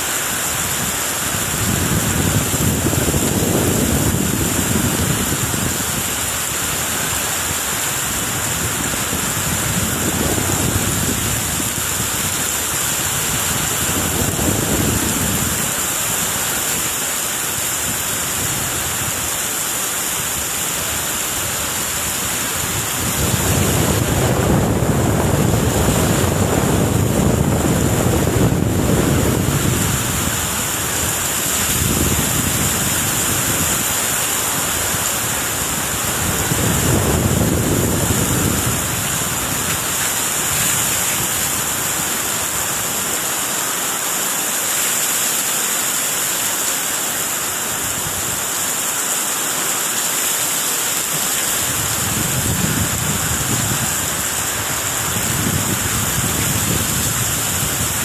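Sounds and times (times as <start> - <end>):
strong wind gusting: 0.0 - 43.4, 51.2 - 58.0
heavy rain: 0.0 - 58.0
wind buffeting microphone: 0.4 - 16.9, 20.0 - 43.0, 51.3 - 58.0.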